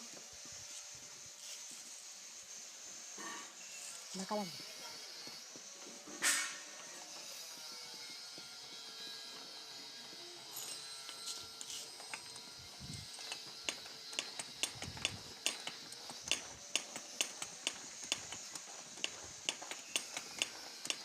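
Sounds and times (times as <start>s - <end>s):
metallic clicks from hand pump: 13.2s - 21.0s.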